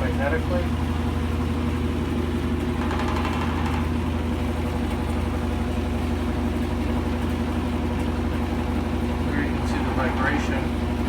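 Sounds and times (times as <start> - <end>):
washing machine spinning and shaking: 0.0 - 11.0.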